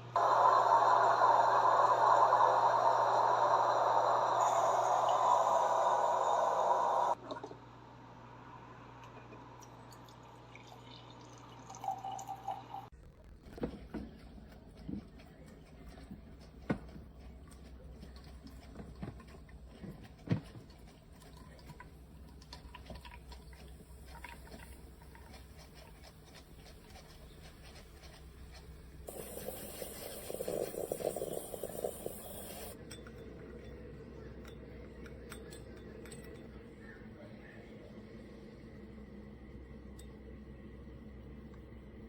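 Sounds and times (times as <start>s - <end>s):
faint steady hum: 0.0s - 42.0s
glass and dishes clinking: 32.8s - 36.5s.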